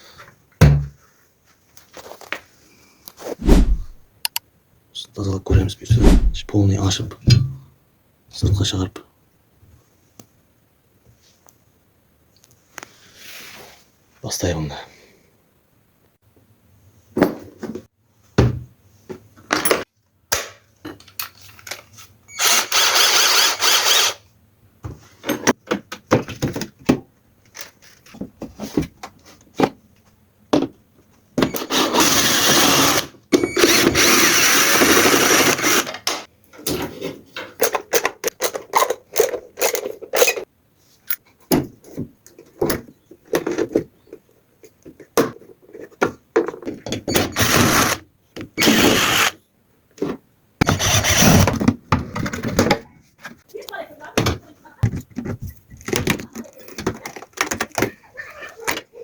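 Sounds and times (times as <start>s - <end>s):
power drill running: 22.4s - 24.2s, 31.7s - 35.9s, 47.1s - 48.0s, 48.6s - 49.4s, 50.7s - 51.5s.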